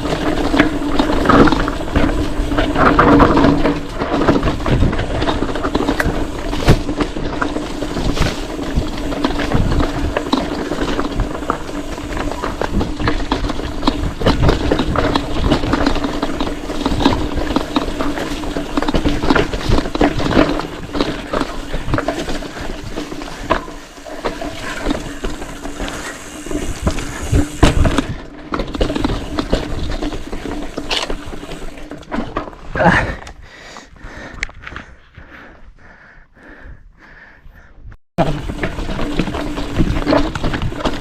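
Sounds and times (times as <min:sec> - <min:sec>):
freehub buzzing: 0:00.0 - 0:32.2
bike frame and chain rattling: 0:00.0 - 0:33.3, 0:38.2 - 0:41.0.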